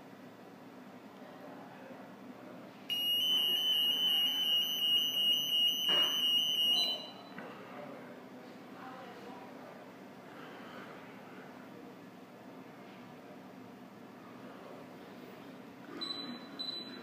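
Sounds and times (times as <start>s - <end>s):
high-pitched alarm buzzer: 2.9s - 7.2s.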